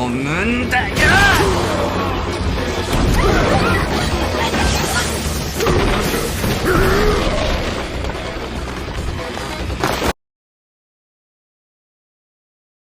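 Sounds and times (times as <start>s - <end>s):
action soundtrack music: 0.0s - 10.1s.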